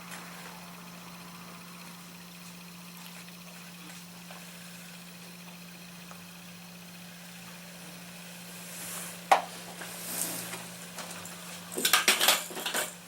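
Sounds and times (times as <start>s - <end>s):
steady low hum: 0.0s - 13.0s
hard objects knocking and clattering: 11.8s - 12.9s.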